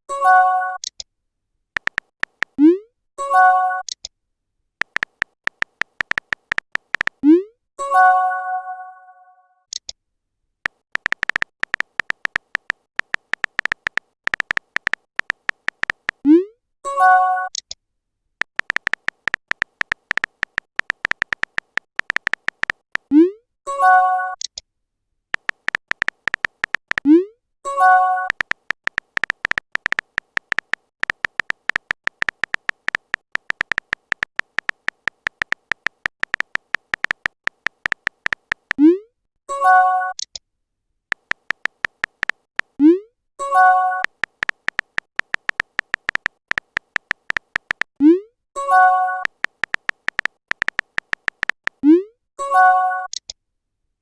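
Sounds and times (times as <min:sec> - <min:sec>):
electronic keyboard typing clicks: 0:01.8 - 0:02.8, 0:04.8 - 0:07.4, 0:10.6 - 0:16.4, 0:18.4 - 0:23.2, 0:25.4 - 0:38.9, 0:41.1 - 0:51.9.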